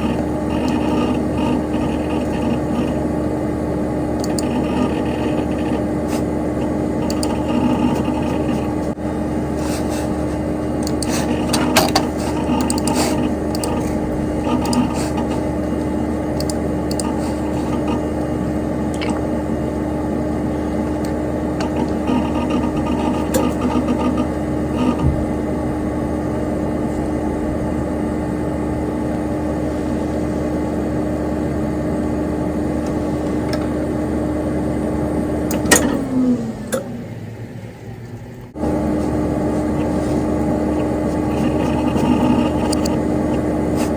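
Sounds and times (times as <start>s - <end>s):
computer fan whirring hum: 0.0s - 43.9s
light hard drive clicks: 4.2s - 5.8s, 6.6s - 8.7s, 10.8s - 18.0s, 40.7s - 43.4s.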